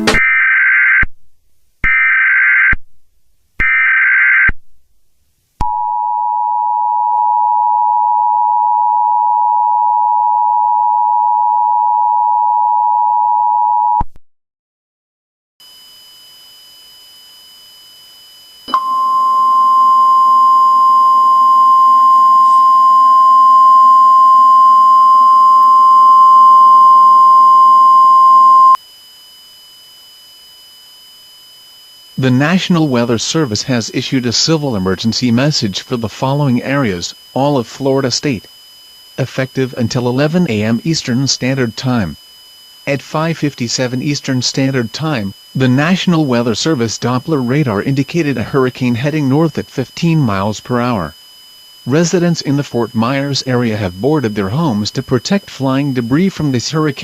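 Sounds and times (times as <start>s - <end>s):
steady tone: 0.0s - 0.4s, 15.7s - 29.0s, 30.5s - 57.0s
two-tone attention signal: 0.0s - 0.4s, 18.7s - 28.8s
buzzy data bursts: 31.2s - 57.0s.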